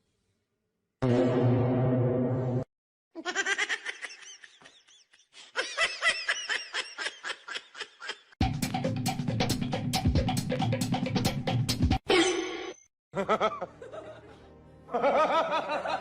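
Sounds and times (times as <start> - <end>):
high-pitched laughter: 3.2 - 8.4.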